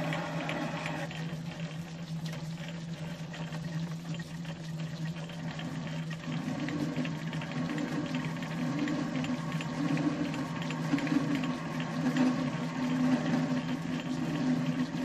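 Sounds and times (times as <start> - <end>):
low machine hum: 0.0 - 15.0.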